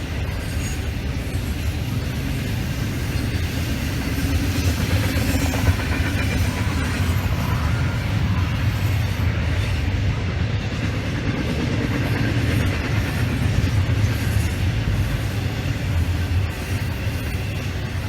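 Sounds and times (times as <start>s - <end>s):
train cars rolling on rails: 0.0s - 18.0s
train passing: 0.0s - 18.0s.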